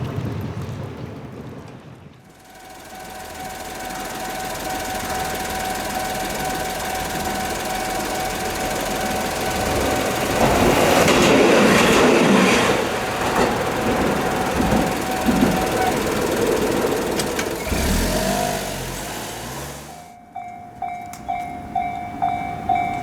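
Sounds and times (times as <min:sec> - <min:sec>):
train rumble: 0:02.3 - 0:23.0
train wheels rushing past: 0:02.4 - 0:20.2
level crossing warning bell ringing: 0:02.4 - 0:23.0.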